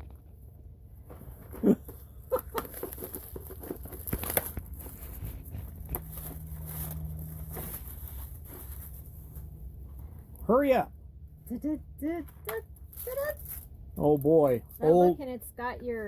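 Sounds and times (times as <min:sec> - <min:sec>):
wrapping paper tearing and crinkling: 0:02.6 - 0:09.3, 0:12.8 - 0:13.7.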